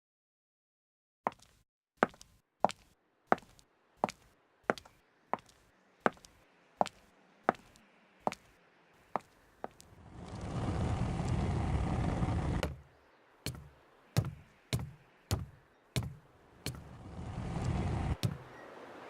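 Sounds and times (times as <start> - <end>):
sharp knocks: 12.6 - 12.9, 13.5 - 16.9, 18.2 - 18.5.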